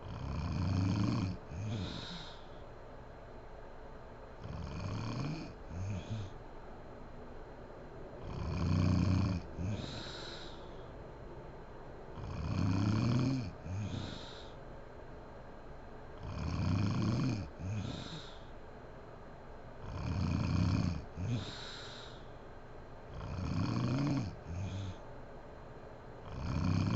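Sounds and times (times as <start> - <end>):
woman snoring: 0.0 - 2.5, 4.4 - 6.4, 8.2 - 10.6, 12.2 - 14.6, 16.2 - 18.5, 19.8 - 22.2, 23.1 - 25.0, 26.3 - 26.9.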